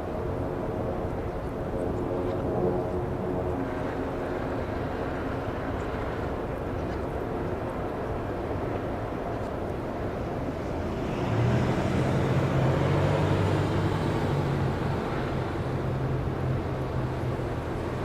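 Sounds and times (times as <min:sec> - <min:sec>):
vehicle engine hum: 0:10.7 - 0:18.0.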